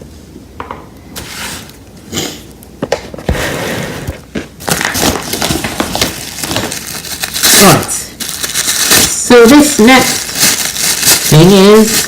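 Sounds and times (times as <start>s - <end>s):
packaging rustling: 4.1s - 12.0s.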